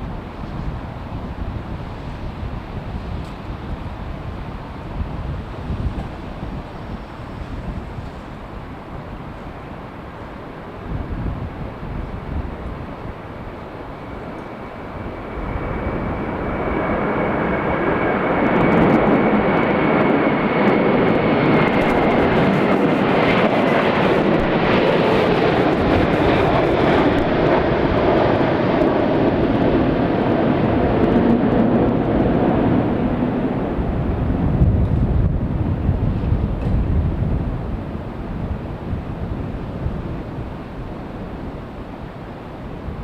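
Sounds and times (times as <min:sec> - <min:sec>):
jet engines roaring: 0:00.0 - 0:43.0
thin engine whine: 0:20.8 - 0:27.4.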